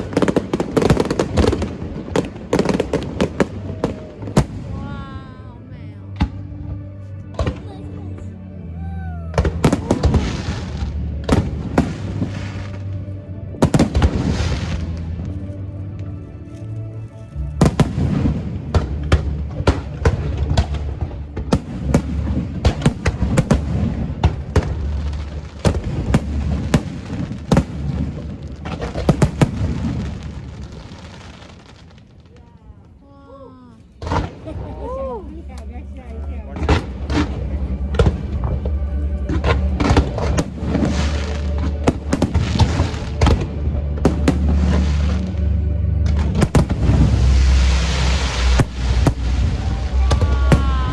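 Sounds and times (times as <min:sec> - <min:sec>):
fireworks bursting: 0:00.0 - 0:04.9, 0:09.4 - 0:12.9, 0:13.6 - 0:15.2, 0:17.6 - 0:32.4, 0:36.6 - 0:45.4, 0:46.0 - 0:50.9.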